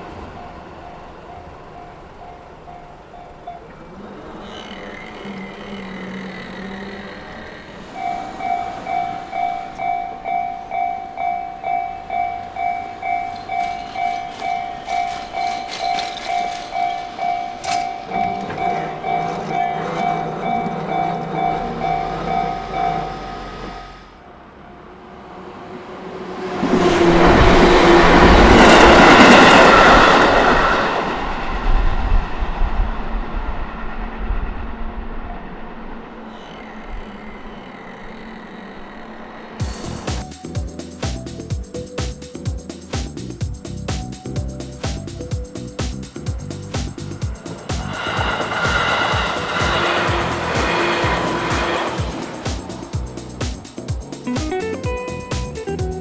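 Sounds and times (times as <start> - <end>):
level-crossing warning bell: 0.0 - 25.6, 44.2 - 54.6
wheels clacking over rail joints: 0.0 - 31.6, 35.7 - 56.0
train passing: 0.0 - 56.0
clattering: 13.3 - 17.0.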